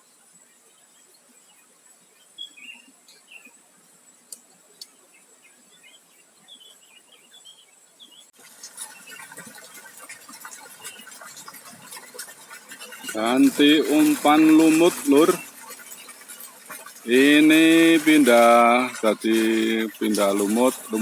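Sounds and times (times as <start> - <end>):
faint bird chirps: 0.8 - 3.6.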